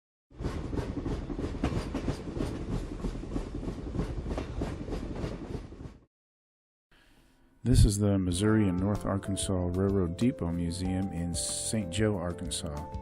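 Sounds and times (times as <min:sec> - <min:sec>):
train low rumble: 0:00.4 - 0:06.0
train wheels clickety-clack: 0:00.4 - 0:06.0.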